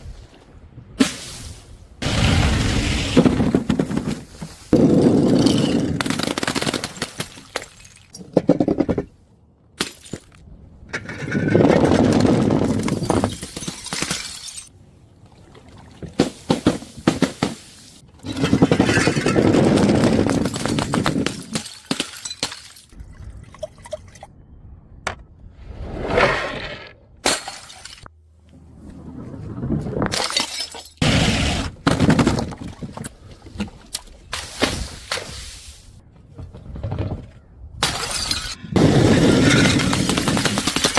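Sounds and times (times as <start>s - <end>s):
glass bottles smashing: 12.9s - 14.7s, 30.1s - 31.0s.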